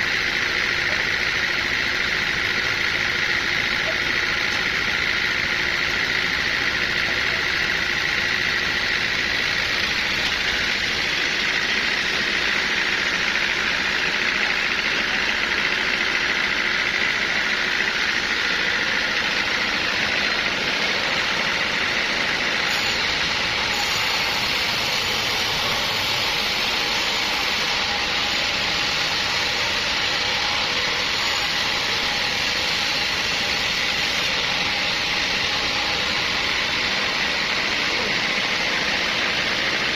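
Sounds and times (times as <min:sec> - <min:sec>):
sawmill machinery whining: 0:00.0 - 0:39.9.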